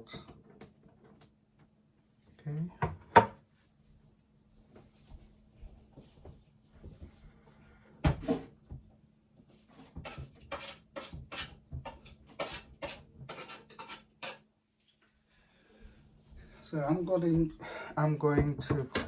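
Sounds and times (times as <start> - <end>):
rubbing strokes in a bowl: 9.4 - 14.4.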